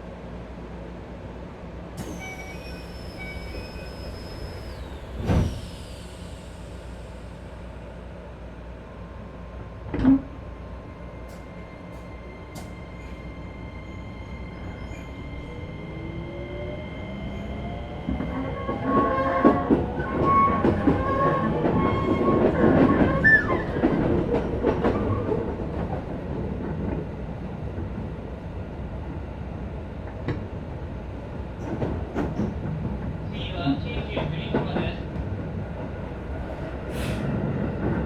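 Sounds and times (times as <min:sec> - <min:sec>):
train inverter tones and motor whine: 0:01.6 - 0:25.7.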